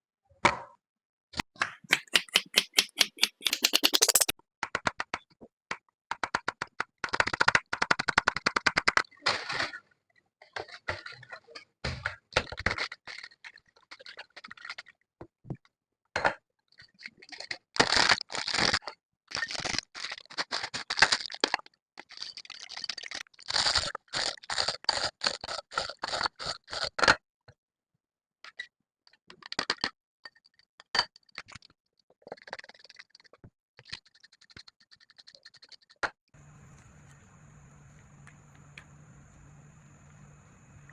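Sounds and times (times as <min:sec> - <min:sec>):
food scraping and crunching: 0:01.9 - 0:04.3
scattered clicks: 0:01.9 - 0:04.3.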